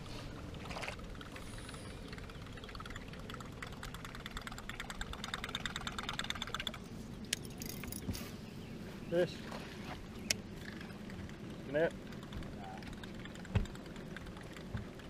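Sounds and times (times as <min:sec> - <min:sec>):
low rumble of wind and water: 0:00.0 - 0:15.0
fishing reel ticking: 0:01.0 - 0:06.8.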